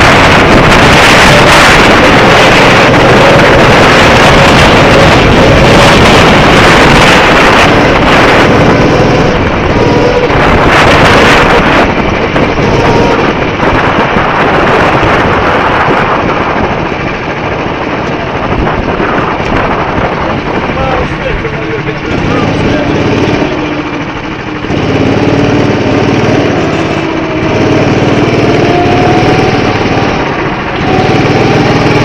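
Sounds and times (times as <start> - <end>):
go-kart engine running: 0.0 - 32.0
wind roar on microphone: 0.0 - 32.0.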